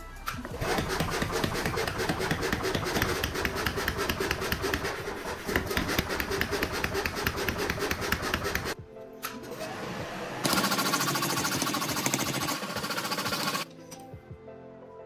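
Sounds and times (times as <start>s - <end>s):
power hammer striking steel: 0.5s - 8.8s.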